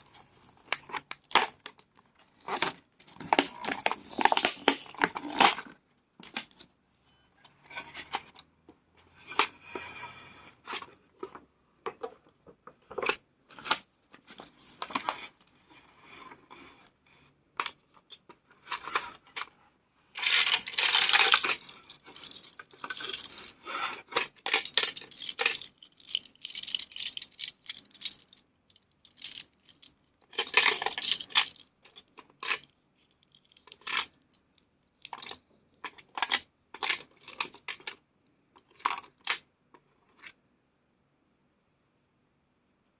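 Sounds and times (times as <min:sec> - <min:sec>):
plastic toy pieces clattering: 0:02.4 - 0:06.6, 0:20.2 - 0:38.0.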